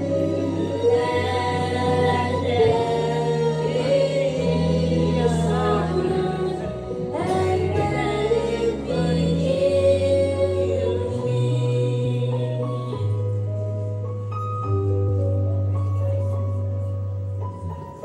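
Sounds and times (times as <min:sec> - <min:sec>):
voices singing long notes: 0:00.0 - 0:12.5.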